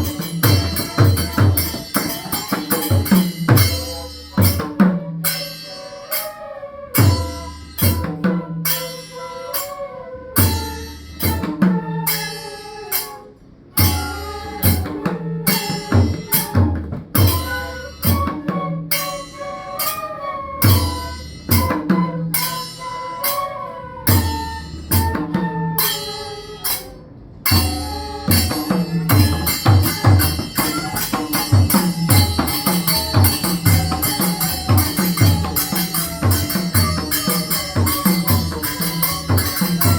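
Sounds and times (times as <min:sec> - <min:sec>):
double-headed hand drum: 0:00.0 - 0:05.5, 0:07.0 - 0:08.9, 0:10.4 - 0:12.1, 0:13.7 - 0:18.9, 0:27.5 - 0:39.9
shimmering metallic layer: 0:00.0 - 0:08.0, 0:25.8 - 0:39.9
wavering melody line: 0:17.2 - 0:39.9.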